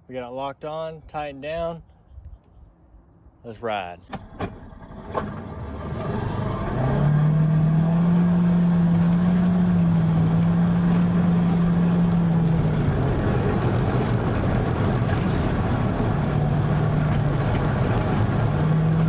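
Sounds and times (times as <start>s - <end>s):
vehicle pulling away: 4.1s - 19.0s.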